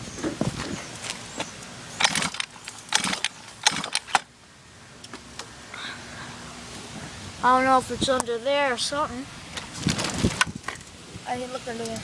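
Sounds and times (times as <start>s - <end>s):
sharp clicks and rattles: 2.0s - 4.3s, 9.6s - 10.9s.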